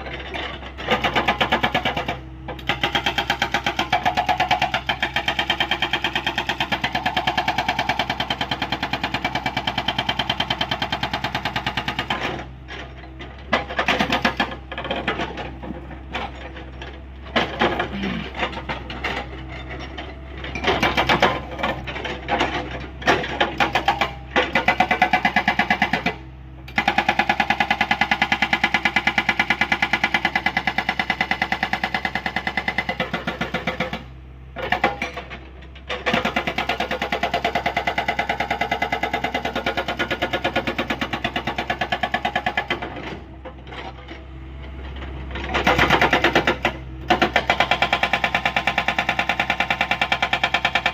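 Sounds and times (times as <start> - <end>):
diesel engine drone: 0.0 - 50.9
hydraulic rock breaker hammering: 0.1 - 12.5, 13.2 - 44.0, 45.3 - 50.9.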